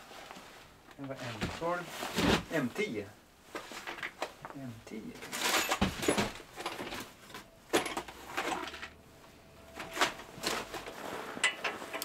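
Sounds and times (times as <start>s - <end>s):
metal bolts and tools clinking: 5.2s - 9.0s, 11.4s - 12.0s.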